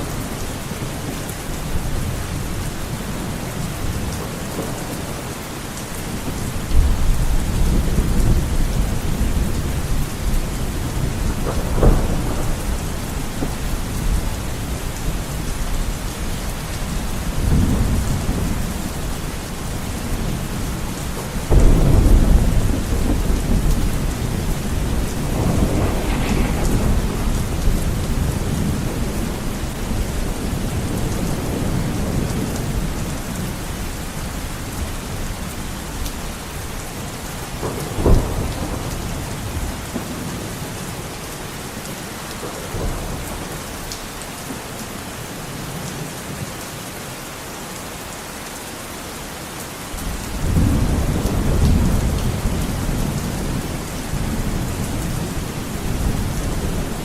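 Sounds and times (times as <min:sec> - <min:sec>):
thunder rumbling: 0:00.0 - 0:34.0, 0:36.6 - 0:41.1, 0:50.0 - 0:57.0
heavy rain on a window: 0:00.0 - 0:57.0.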